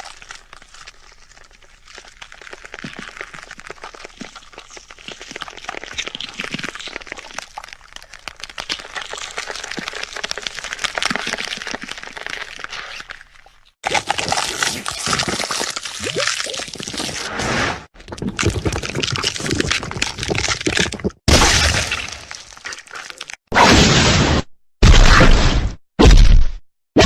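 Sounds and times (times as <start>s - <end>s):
wet gore crackling and squelching: 0.0s - 23.6s.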